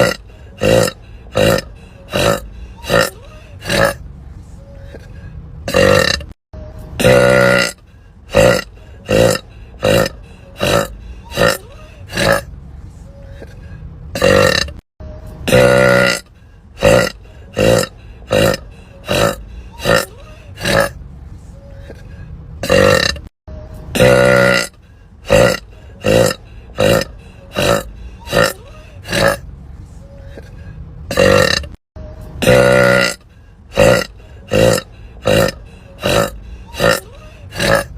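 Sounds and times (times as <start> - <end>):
woman burping: 0.0 - 4.0, 5.7 - 6.4, 7.0 - 12.4, 14.2 - 14.8, 15.5 - 16.2, 16.8 - 20.9, 22.6 - 23.3, 24.0 - 24.7, 25.3 - 29.4, 31.1 - 31.8, 32.4 - 33.2, 33.8 - 37.9.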